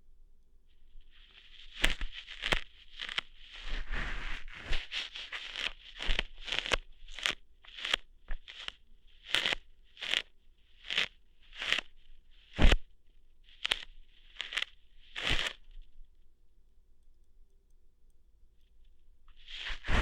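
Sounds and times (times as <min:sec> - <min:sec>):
crackly ear hair plucks: 0:00.9 - 0:16.1.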